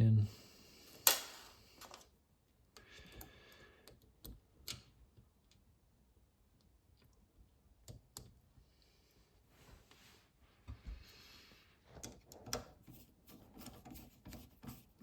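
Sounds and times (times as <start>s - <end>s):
faint clicks of tap parts: 2.7s - 5.7s, 7.8s - 8.4s.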